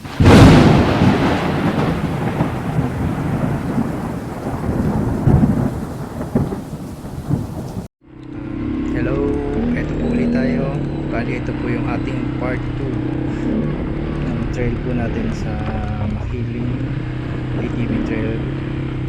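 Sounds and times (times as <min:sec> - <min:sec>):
thunderclap with rolling rumble: 0:00.0 - 0:07.9, 0:10.9 - 0:19.0.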